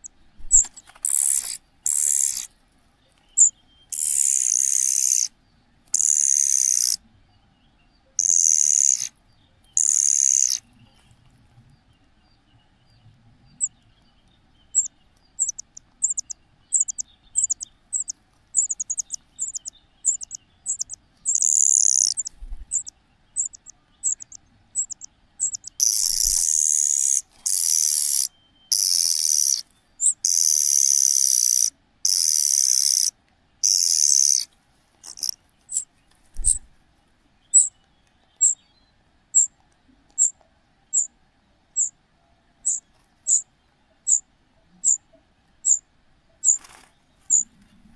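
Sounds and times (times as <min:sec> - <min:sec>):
harsh cuckoo calls: 0:00.0 - 0:02.5, 0:03.4 - 0:05.4, 0:06.0 - 0:07.0, 0:08.2 - 0:10.6, 0:14.7 - 0:36.7
young cuckoo begging calls: 0:00.0 - 0:02.5, 0:03.4 - 0:05.3, 0:06.0 - 0:07.0, 0:08.2 - 0:09.1, 0:09.8 - 0:10.6, 0:14.8 - 0:35.8.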